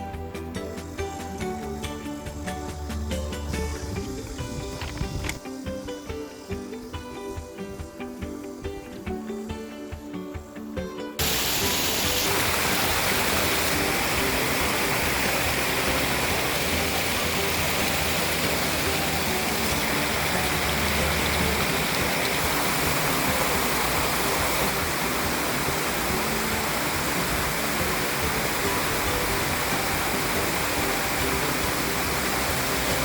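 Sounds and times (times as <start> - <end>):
faint music: 0.0 - 33.0
stream water rushing: 11.2 - 33.0.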